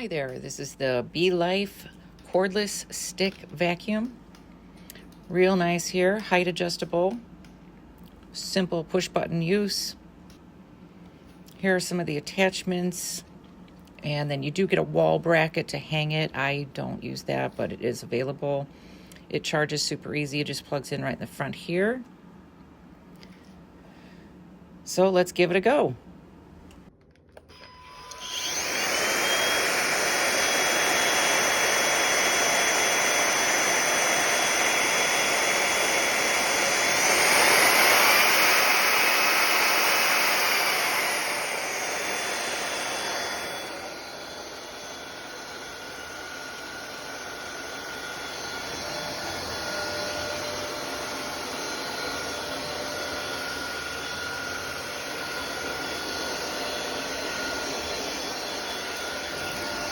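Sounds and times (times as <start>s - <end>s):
stick vacuum whining: 27.1s - 59.9s.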